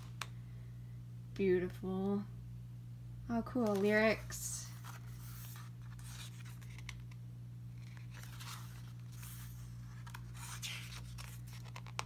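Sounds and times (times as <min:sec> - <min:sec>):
low electrical hum: 0:00.0 - 0:12.0
paper pages turning: 0:03.6 - 0:12.0.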